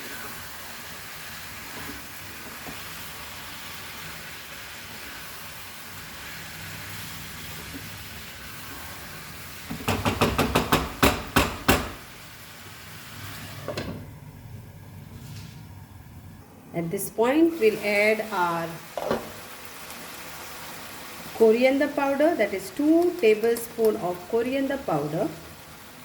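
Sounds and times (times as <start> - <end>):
chicken sizzling in a pan: 0.0 - 13.9, 17.3 - 26.0
spoon knocking on a pan: 9.7 - 12.0.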